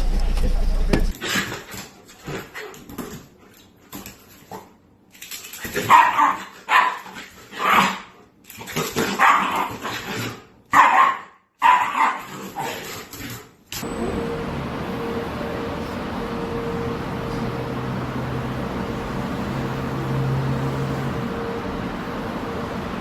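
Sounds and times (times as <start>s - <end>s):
dog barking: 5.8s - 8.1s, 9.0s - 10.0s, 10.7s - 12.8s.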